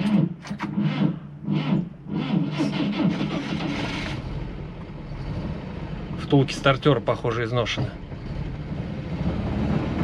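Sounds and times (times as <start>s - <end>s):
starter motor cranking engine: 0.0s - 4.4s
car engine running: 0.0s - 10.0s.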